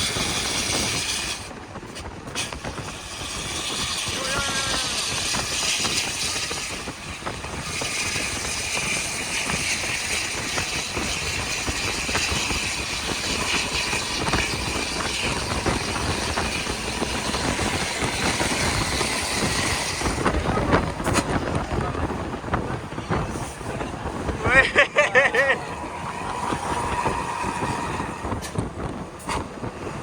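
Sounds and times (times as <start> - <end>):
vehicle engine and road noise: 0.0 - 30.0.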